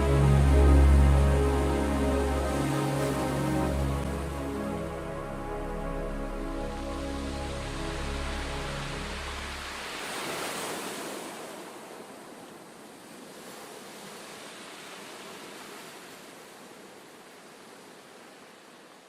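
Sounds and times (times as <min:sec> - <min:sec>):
soft music: 0:00.0 - 0:10.6
sea waves washing in: 0:00.0 - 0:19.0.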